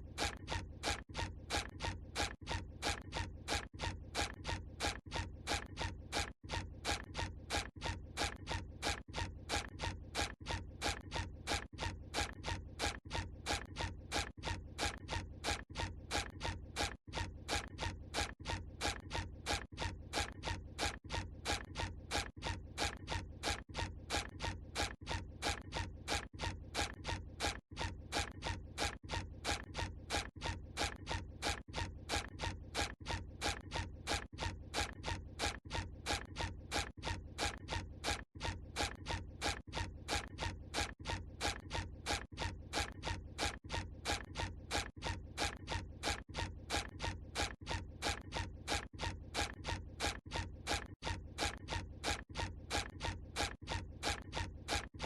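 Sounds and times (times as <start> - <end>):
cartoon footstep sounds: 28.2 - 55.0.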